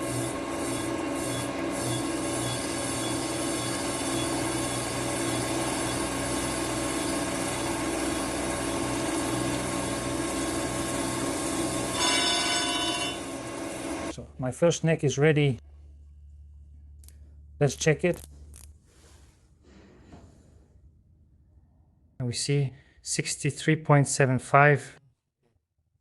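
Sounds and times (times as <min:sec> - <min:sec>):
grinding machine running: 0:00.0 - 0:14.1
high bright whine: 0:11.8 - 0:14.1.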